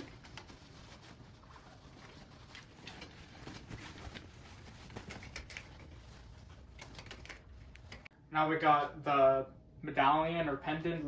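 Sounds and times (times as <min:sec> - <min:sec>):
light clicks and rustles: 0:00.0 - 0:08.1.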